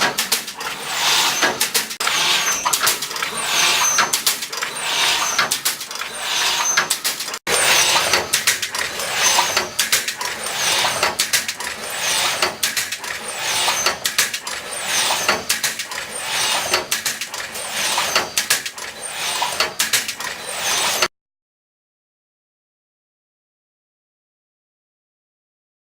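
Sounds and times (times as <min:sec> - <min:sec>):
welding machine clattering and clicking: 0:00.0 - 0:21.1.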